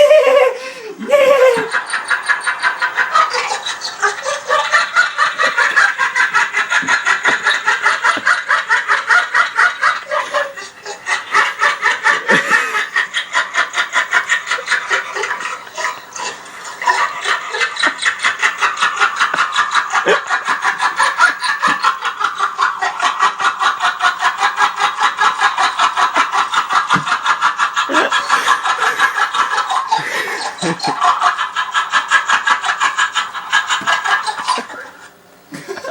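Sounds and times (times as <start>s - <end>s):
person snickering breathily: 0.0s - 8.4s, 10.1s - 14.0s, 27.9s - 31.1s.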